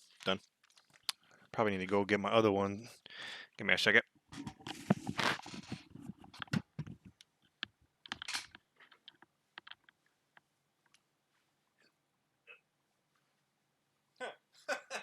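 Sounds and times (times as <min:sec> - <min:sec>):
rustling: 0:04.3 - 0:11.6.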